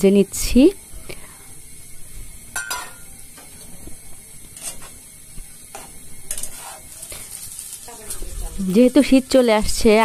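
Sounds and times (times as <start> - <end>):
oil sizzling: 0.0 - 10.0
spatula scraping a pan: 4.6 - 5.0, 5.8 - 8.5.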